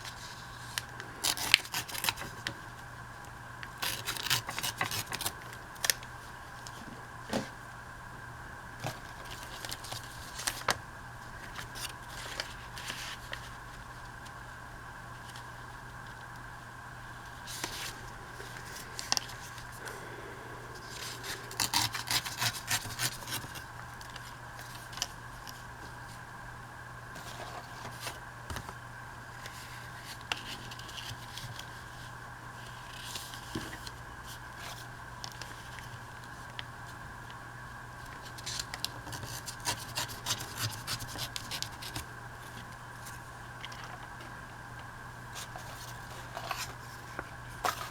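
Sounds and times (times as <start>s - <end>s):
steady low hum: 0.0s - 47.9s
paper handling and scraping: 3.8s - 6.1s, 38.1s - 44.0s, 45.3s - 47.9s.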